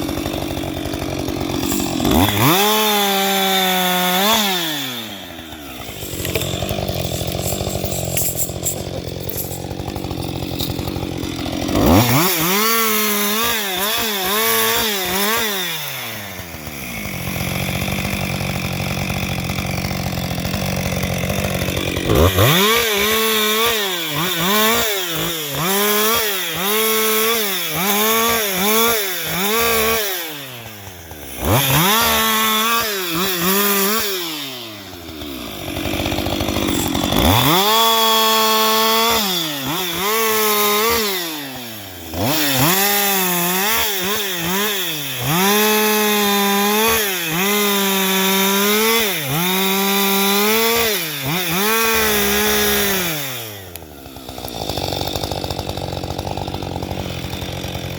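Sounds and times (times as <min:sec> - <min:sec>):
chainsaw revving: 0:00.0 - 0:57.9.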